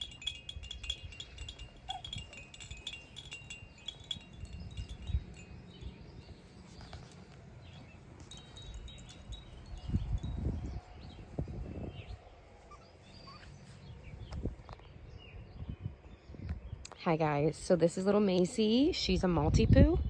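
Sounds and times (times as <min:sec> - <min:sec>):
jingle toy bells jingling: 0:00.0 - 0:10.6.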